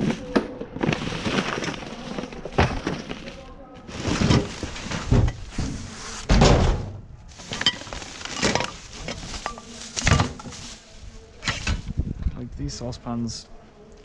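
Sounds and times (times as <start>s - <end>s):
metal saucepans clattering: 7.4s - 10.6s.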